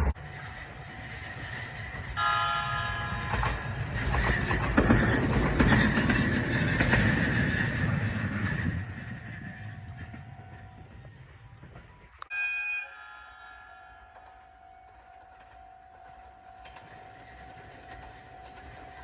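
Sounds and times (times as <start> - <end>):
train wheels clattering: 0.0 - 12.3
train horn: 2.2 - 3.8, 12.2 - 16.8.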